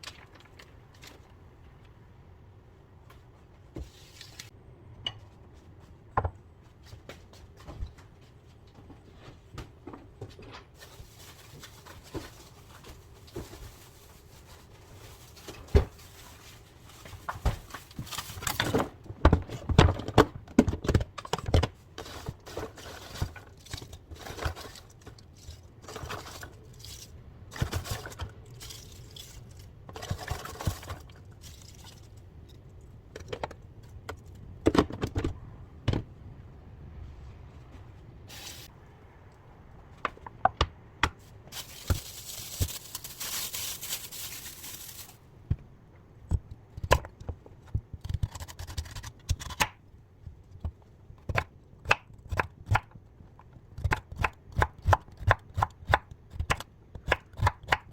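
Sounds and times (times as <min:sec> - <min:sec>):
packaging rustling and tearing: 0:10.8 - 0:18.9, 0:41.5 - 0:45.2.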